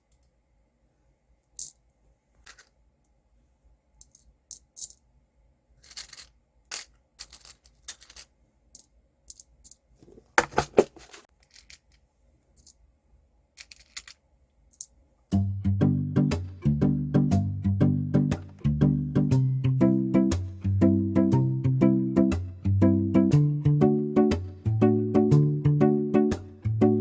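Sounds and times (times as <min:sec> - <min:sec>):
hands handling small craft pieces: 0:13.6 - 0:14.9
background music: 0:15.3 - 0:27.0.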